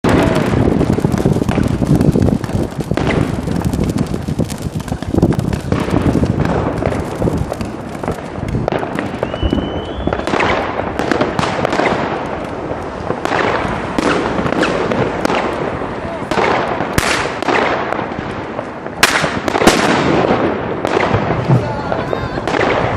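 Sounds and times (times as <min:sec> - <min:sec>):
fireworks banging and crackling: 0:00.0 - 0:22.9
rising firework whistle: 0:08.7 - 0:10.8.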